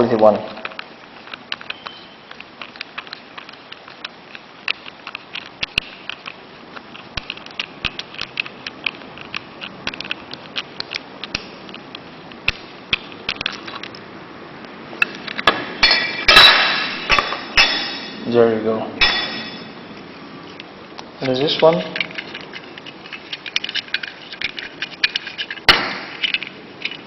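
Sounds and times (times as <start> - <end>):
metal parts clinking: 15.2 - 18.3, 19.0 - 19.8, 21.2 - 27.0.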